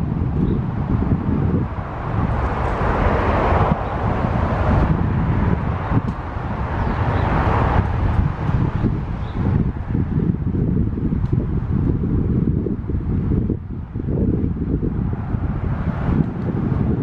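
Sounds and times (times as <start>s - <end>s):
passing road traffic: 0.0s - 17.0s
wind rumbling on microphone: 0.0s - 17.0s.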